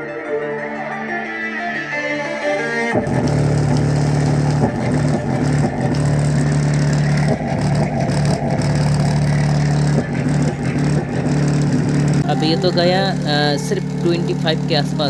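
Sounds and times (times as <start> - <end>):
loud low bass note: 3.0 - 15.0.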